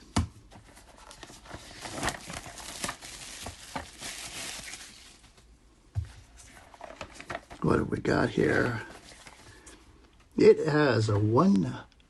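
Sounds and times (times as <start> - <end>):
packaging crinkling and rustling: 0.5 - 5.5, 6.2 - 9.8.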